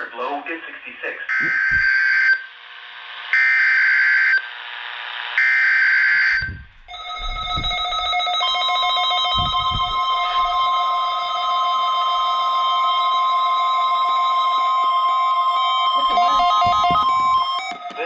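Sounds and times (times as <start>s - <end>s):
faint radio hiss: 0.0s - 1.3s
digital data tone bursts: 15.1s - 18.0s.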